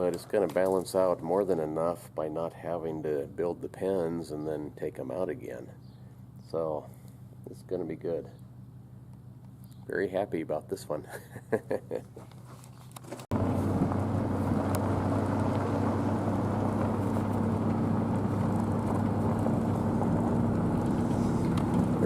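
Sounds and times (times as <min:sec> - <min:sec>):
vehicle engine running: 0:00.0 - 0:10.2, 0:12.2 - 0:22.0.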